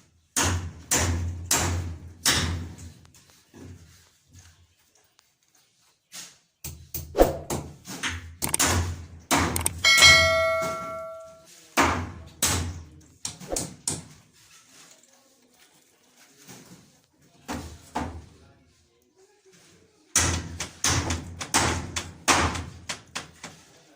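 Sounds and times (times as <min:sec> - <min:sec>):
ringing metallic clang: 0:09.7 - 0:11.4.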